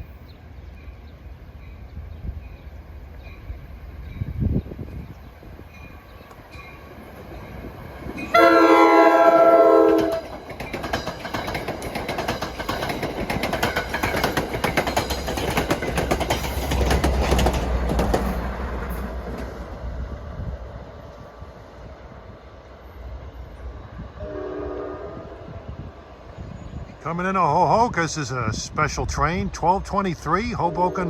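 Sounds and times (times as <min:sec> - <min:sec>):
train horn blast: 0:08.3 - 0:10.2, 0:24.2 - 0:25.6, 0:30.6 - 0:31.0
train wheels clicking over rail joints: 0:09.8 - 0:19.8.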